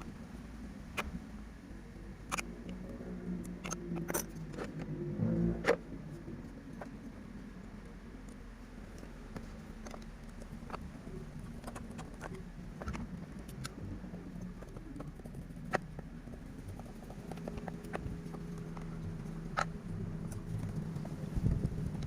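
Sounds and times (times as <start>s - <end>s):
low steady hum: 0.0s - 22.0s
tools and metal parts clicking: 3.5s - 4.8s.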